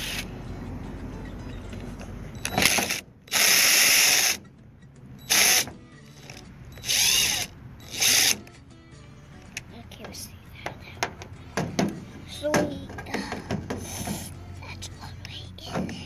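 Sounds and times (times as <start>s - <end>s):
power driver whirring: 2.4s - 4.4s, 5.2s - 8.5s.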